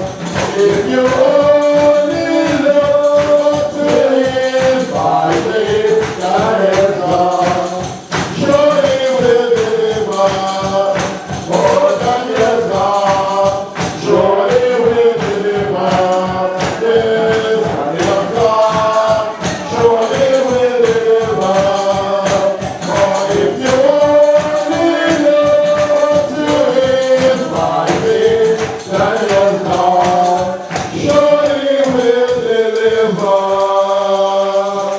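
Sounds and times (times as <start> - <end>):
group singing gospel song: 0.0 - 34.9
tambourine-like percussion beat: 0.0 - 34.9.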